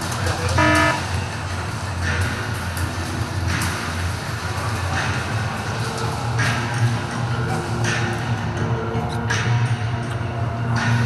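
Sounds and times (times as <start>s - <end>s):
music with heavy bass: 0.5s - 1.1s
short sharp sounds: 0.6s - 1.0s.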